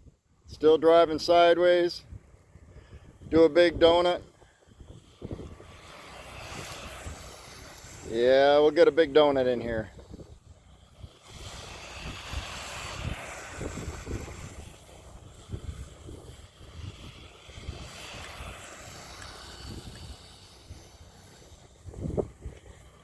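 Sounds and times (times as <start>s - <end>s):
wind rumbling on microphone: 0.0s - 23.0s
electric toy car motor running: 5.2s - 8.2s, 10.8s - 22.6s.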